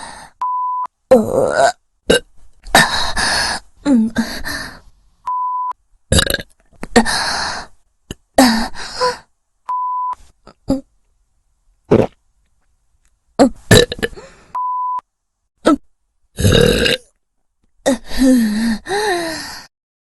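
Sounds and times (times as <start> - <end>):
loud drawn-out burps: 6.1 - 6.5, 11.9 - 12.2, 13.7 - 14.2, 16.4 - 17.1.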